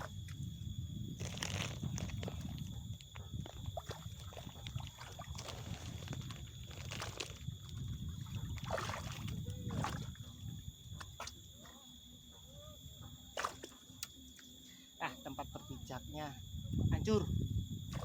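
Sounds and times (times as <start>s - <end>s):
water sloshing: 1.2s - 11.9s, 13.3s - 14.5s.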